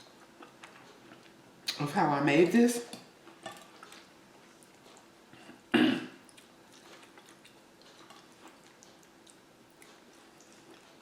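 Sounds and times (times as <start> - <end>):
person coughing: 5.7 - 6.2.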